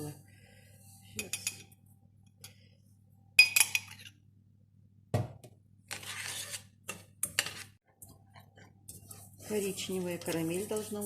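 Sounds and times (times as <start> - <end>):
spoon scraping saucepan: 5.9 - 7.8, 8.4 - 11.0.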